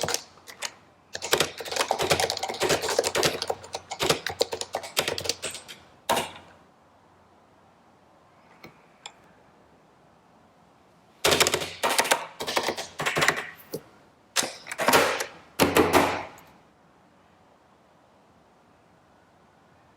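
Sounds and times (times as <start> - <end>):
keyboard typing: 0.0 - 6.5, 11.3 - 13.8.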